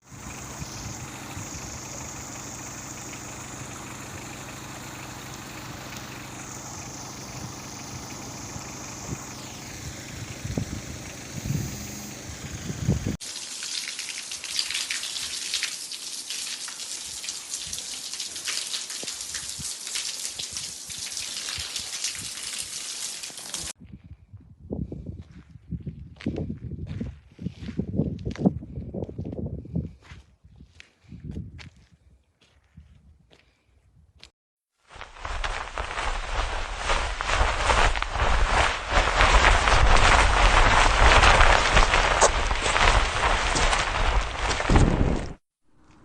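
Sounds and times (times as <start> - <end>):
rain falling: 0.0 - 11.4, 13.2 - 23.7, 35.0 - 45.3
steady low hum: 0.0 - 13.2, 35.0 - 46.0.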